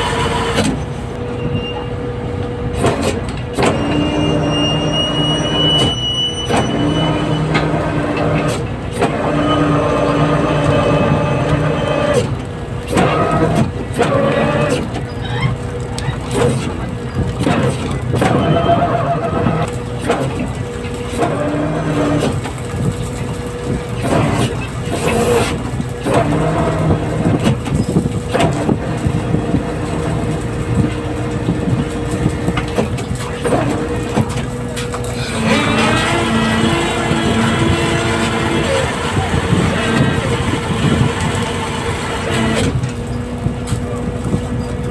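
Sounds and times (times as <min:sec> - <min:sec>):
boat engine running: 0:00.0 - 0:44.9.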